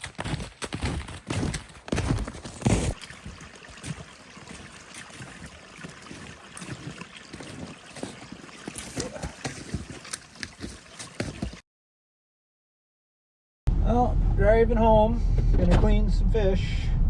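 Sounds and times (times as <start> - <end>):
footsteps crunching through snow: 0.0 - 11.6.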